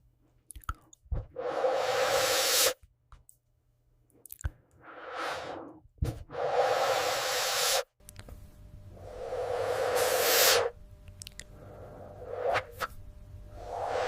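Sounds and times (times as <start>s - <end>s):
mouth clicks: 0.5s - 1.0s, 4.2s - 4.8s, 11.1s - 11.6s
breath blown through a hose: 1.2s - 2.8s, 4.8s - 7.9s, 8.9s - 10.8s, 11.6s - 12.9s, 13.5s - 14.0s.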